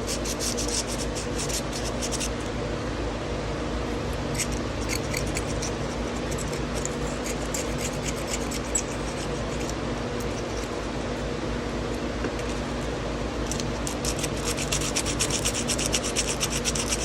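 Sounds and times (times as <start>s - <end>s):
sandpaper scraping steel: 0.0s - 2.3s, 4.4s - 9.7s, 13.5s - 17.0s
steady low hum: 0.0s - 17.0s.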